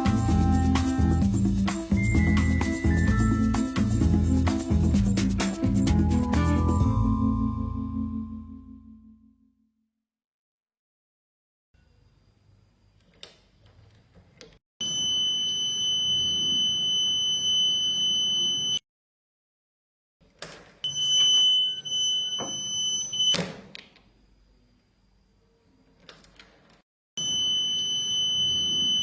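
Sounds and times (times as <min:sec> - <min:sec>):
high-pitched alarm buzzer: 0:20.9 - 0:23.4, 0:27.2 - 0:29.0.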